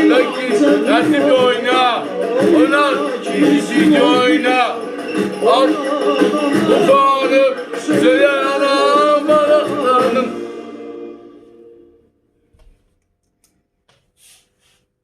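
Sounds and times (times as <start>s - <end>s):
person singing folk song: 0.0s - 11.3s
instrumental backing: 0.0s - 12.1s.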